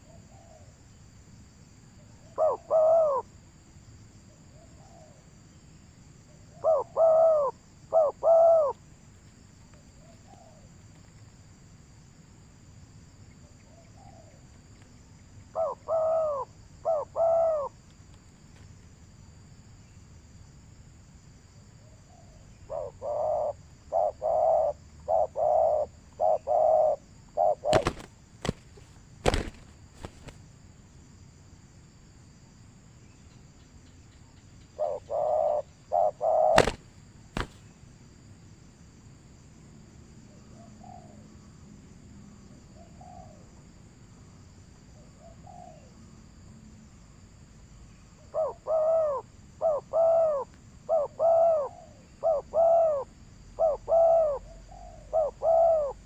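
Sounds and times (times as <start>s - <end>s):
bird hooting calls: 2.3s - 3.3s, 6.6s - 8.8s, 15.5s - 17.8s, 22.1s - 28.1s, 34.8s - 36.8s, 48.3s - 56.0s.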